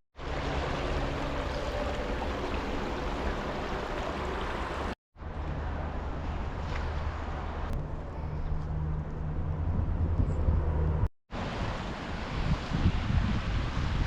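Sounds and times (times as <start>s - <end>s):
water rushing over rocks: 0.2s - 5.0s
low water rumble: 0.2s - 8.0s.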